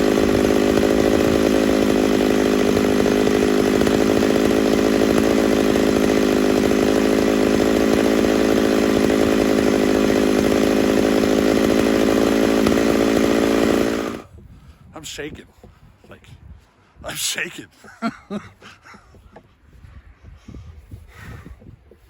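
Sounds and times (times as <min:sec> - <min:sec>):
chainsaw cutting wood at full throttle: 0:00.0 - 0:14.3.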